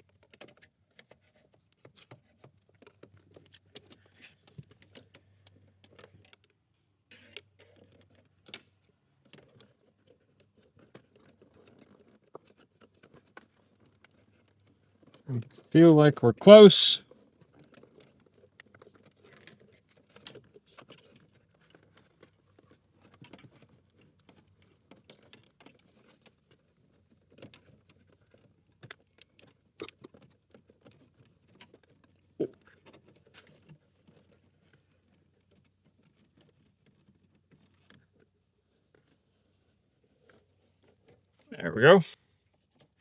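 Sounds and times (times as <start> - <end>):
faint clicks and light rattles: 0.0 - 15.3, 17.3 - 41.5.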